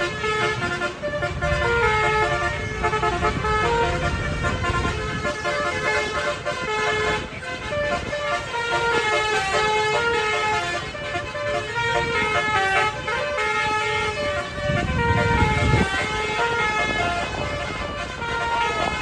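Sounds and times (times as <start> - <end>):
bus engine rumbling: 0.0 - 19.0
multi-tone air horn melody: 0.0 - 19.0.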